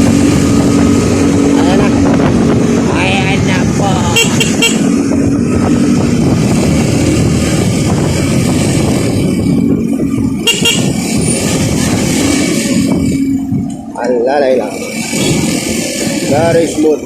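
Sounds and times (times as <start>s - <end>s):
wind on microphone: 0.0s - 14.0s
motorcycle engine running: 0.0s - 17.0s
vehicle horns honking: 4.0s - 5.1s, 10.4s - 11.6s.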